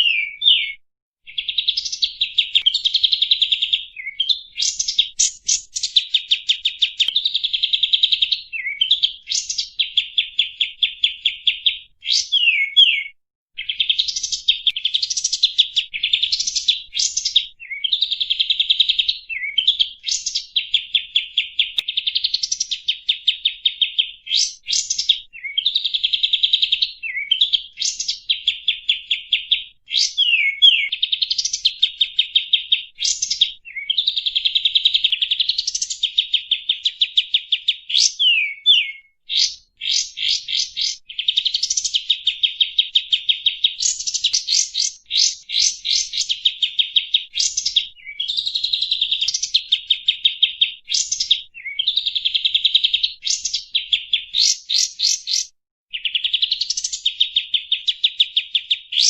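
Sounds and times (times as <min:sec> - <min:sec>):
bird rising whistles: 0:12.1 - 0:13.2, 0:29.9 - 0:31.0, 0:37.9 - 0:41.5.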